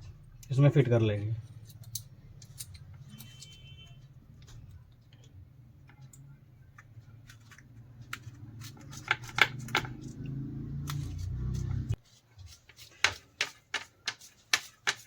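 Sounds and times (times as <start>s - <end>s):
connector parts clicking and rattling: 1.4s - 3.6s.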